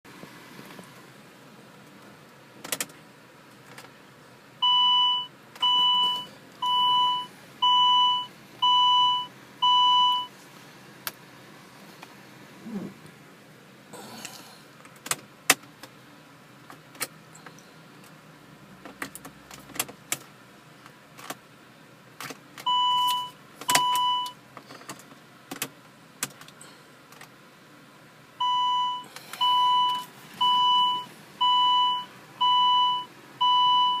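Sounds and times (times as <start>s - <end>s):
short electronic beeps: 4.6s - 10.3s, 28.4s - 34.0s.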